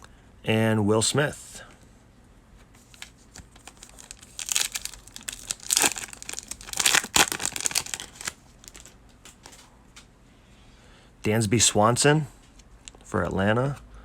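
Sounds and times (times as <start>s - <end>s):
foil wrapper crinkling: 2.9s - 9.7s.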